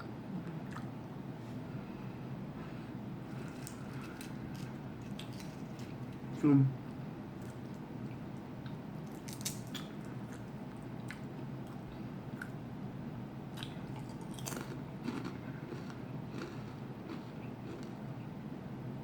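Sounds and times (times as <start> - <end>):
potato chips crunching: 3.4 - 6.2, 9.1 - 10.4, 13.6 - 17.9.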